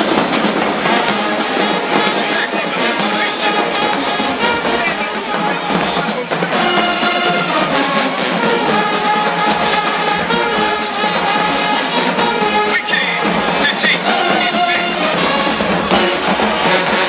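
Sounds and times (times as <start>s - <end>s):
brass section playing: 0.0s - 17.0s
drumline percussion: 0.0s - 17.0s.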